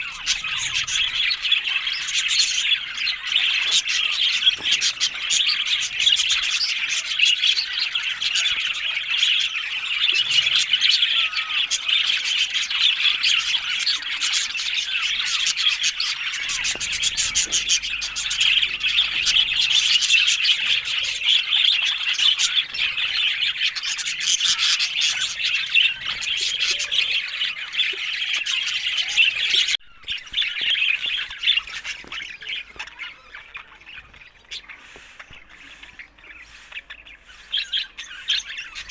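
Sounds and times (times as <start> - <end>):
budgerigars chattering and warbling: 0.0 - 38.9.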